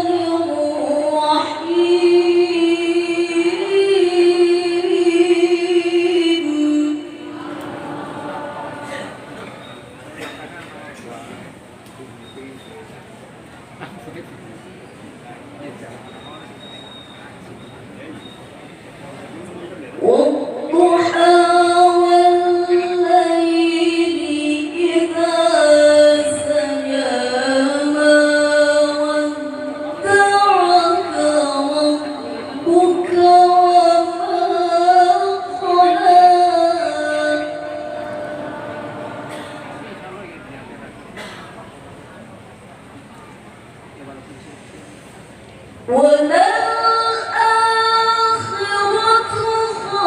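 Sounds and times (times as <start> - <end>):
person chanting a recitation: 0.0 - 9.8, 20.0 - 40.3.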